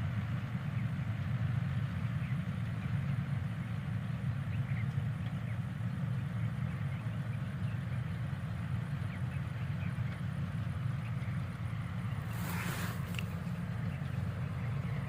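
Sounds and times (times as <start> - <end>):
combine harvester droning: 0.0 - 15.0
short rush of noise: 12.2 - 13.4.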